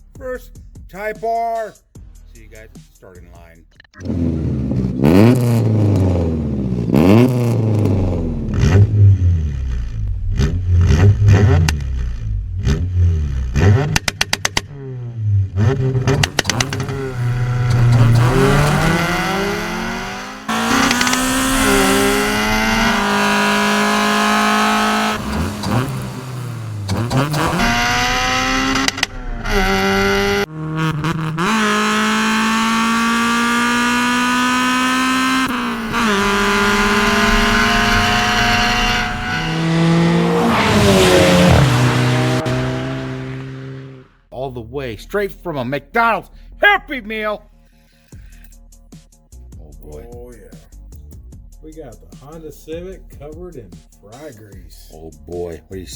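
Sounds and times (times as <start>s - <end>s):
race car engine revving and accelerating: 4.0s - 44.2s.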